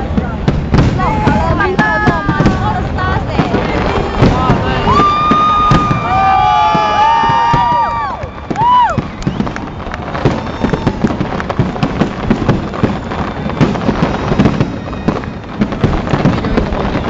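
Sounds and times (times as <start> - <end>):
fireworks bangs and crackling: 0.0 - 17.0
whistling firework whine: 4.0 - 17.0.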